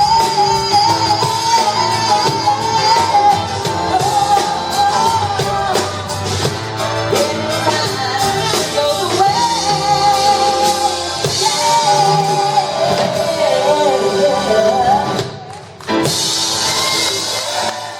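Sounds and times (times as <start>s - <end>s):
lead singer singing: 0.0s - 15.6s
band music: 0.0s - 17.9s
drums: 0.0s - 17.9s.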